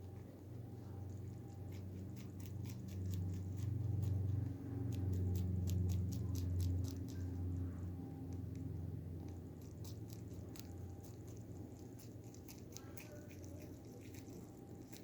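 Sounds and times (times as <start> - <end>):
low steady hum: 0.0 - 15.0
rabbit crunching herbs: 0.0 - 15.0.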